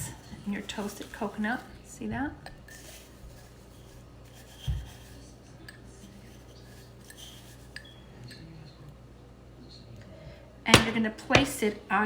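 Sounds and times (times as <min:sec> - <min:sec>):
dough rubbing in coconut: 0:00.0 - 0:07.8.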